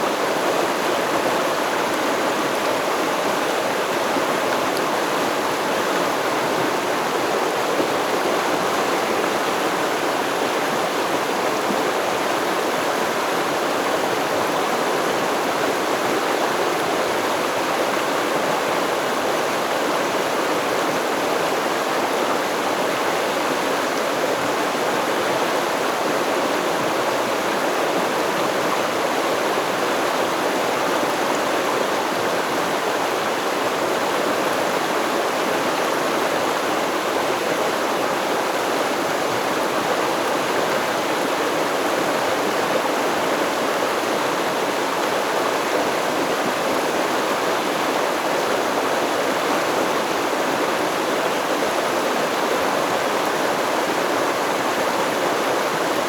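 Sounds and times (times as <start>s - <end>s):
stream flowing over stones: 0.0s - 56.0s.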